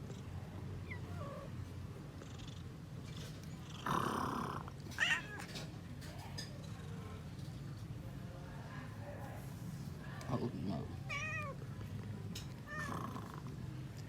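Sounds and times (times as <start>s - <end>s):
cat purring: 0.0s - 5.5s, 10.3s - 14.0s
cat mewing: 4.9s - 5.6s, 11.1s - 11.6s, 12.7s - 13.4s.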